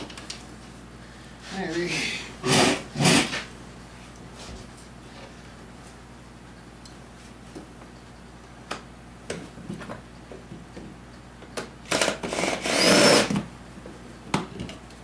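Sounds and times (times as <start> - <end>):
cordless drill whining: 12.2 - 13.3.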